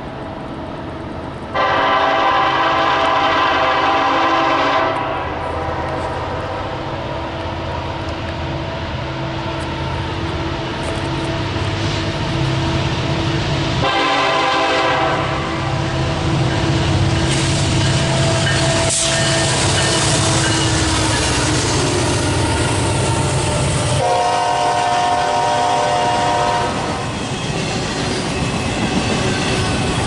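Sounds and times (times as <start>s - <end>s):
freight train rumbling past: 0.0s - 30.0s
train horn blasting: 1.5s - 6.1s, 13.8s - 15.8s, 24.0s - 27.1s.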